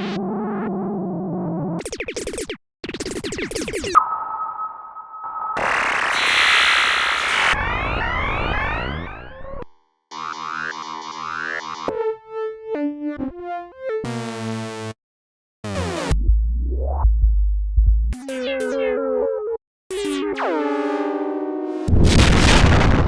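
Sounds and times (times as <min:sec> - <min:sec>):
held synth tone with glides: 0:04.0 - 0:09.3
loud noise burst: 0:05.6 - 0:09.4.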